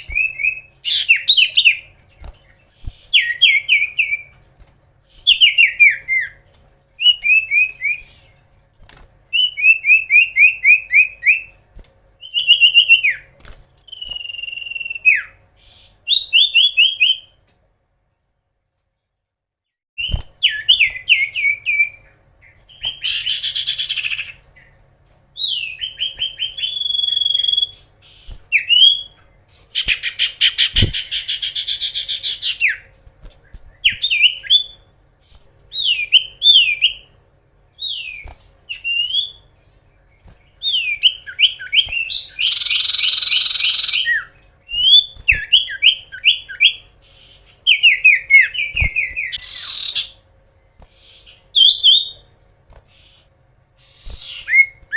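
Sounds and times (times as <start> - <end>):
bird whistling down-slurred notes: 13.9 - 15.4
buzzy rattling bird trills: 37.8 - 54.9.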